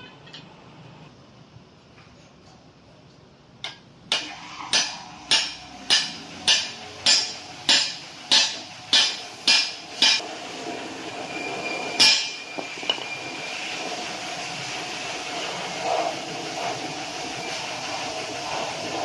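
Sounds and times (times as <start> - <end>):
hammer striking metal: 3.6 - 10.2, 11.9 - 13.2.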